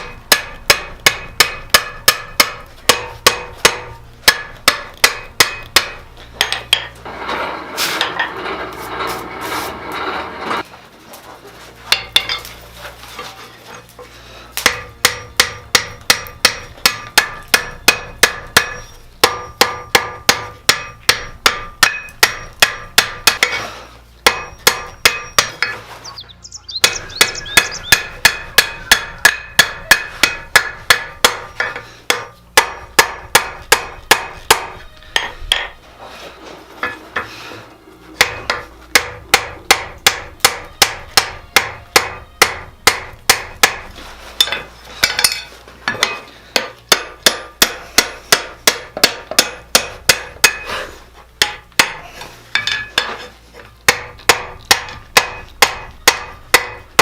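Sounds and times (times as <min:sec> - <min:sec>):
hammer ringing on anvil: 0:00.0 - 0:06.9, 0:14.6 - 0:23.6, 0:24.2 - 0:25.8, 0:26.8 - 0:35.8, 0:38.2 - 0:43.8.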